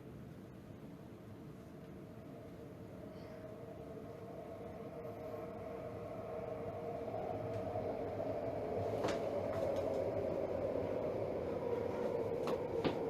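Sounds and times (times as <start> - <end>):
steady machine hum: 0.0 - 13.0.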